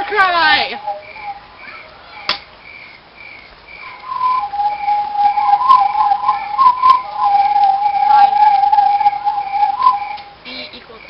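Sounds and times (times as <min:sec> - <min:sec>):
higher wavering whistle: 0:00.0 - 0:01.8, 0:03.8 - 0:10.5
steady whistling tone: 0:00.0 - 0:02.3, 0:03.8 - 0:10.6.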